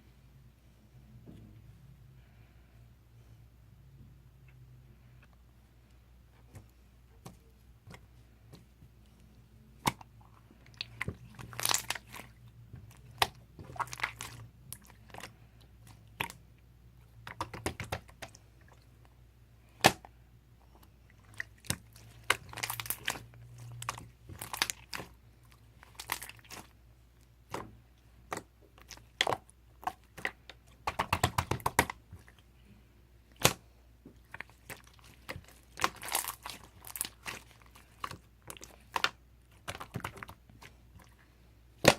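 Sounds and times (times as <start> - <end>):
chewing and crunching: 34.2 - 41.3.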